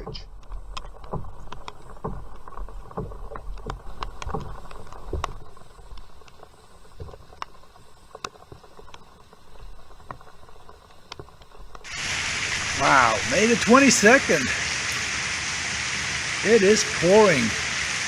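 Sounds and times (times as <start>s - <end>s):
water drops plinking and splashing: 0.0s - 5.5s, 11.8s - 17.6s.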